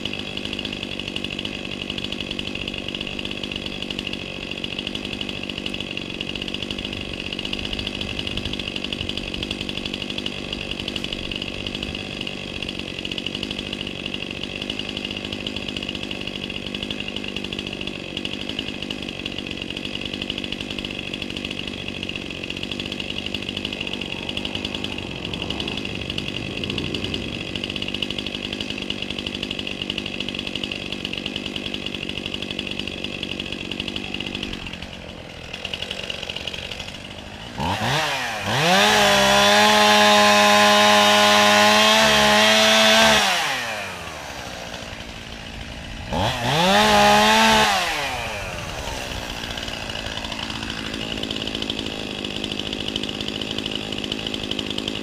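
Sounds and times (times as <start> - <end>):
chainsaw running: 0.0 - 55.0.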